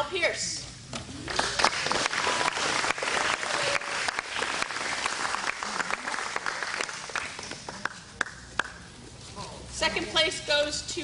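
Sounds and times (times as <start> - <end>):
audience applauding: 1.2 - 8.7.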